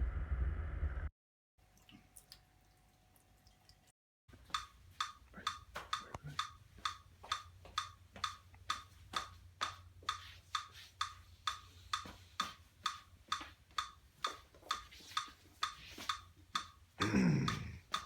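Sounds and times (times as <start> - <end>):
steady ticking: 4.4 - 18.0.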